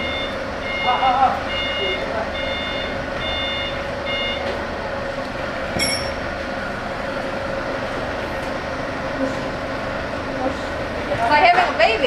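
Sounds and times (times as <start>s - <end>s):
truck back-up alarm beeping: 0.0s - 4.8s, 5.8s - 6.8s
truck engine running: 0.0s - 12.0s
short clink: 5.8s - 6.2s.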